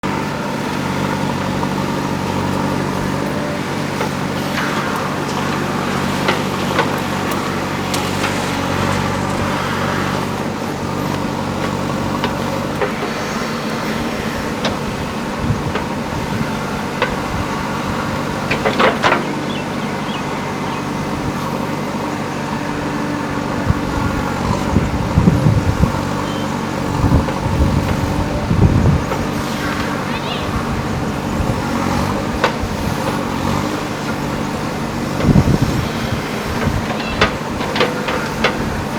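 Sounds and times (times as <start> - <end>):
diesel engine running: 0.0 - 38.9
knocks and clanks: 18.1 - 19.8.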